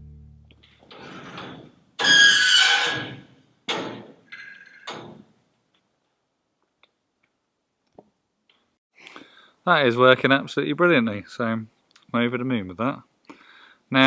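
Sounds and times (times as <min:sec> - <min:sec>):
metal door bolt scraping: 0:00.9 - 0:05.2.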